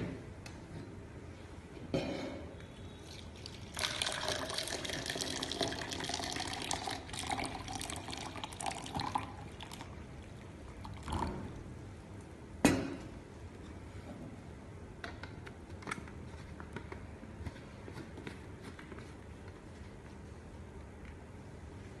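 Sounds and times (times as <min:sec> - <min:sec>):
liquid pouring and splashing: 0:03.0 - 0:11.5.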